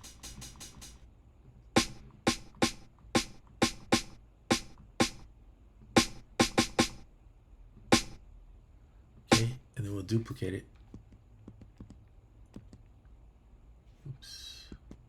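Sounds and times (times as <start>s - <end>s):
snare drum hits: 0.0s - 1.0s, 1.8s - 5.2s, 6.0s - 7.0s, 7.9s - 8.2s, 9.3s - 9.6s.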